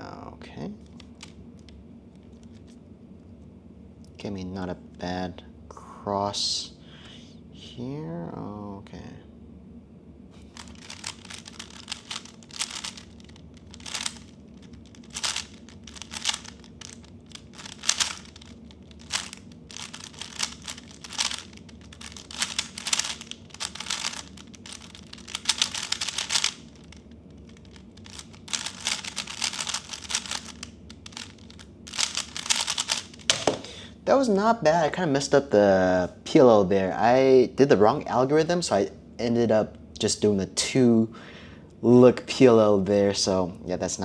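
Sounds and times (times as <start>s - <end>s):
puzzle cube clicking turns: 0.8s - 2.8s, 10.4s - 33.7s.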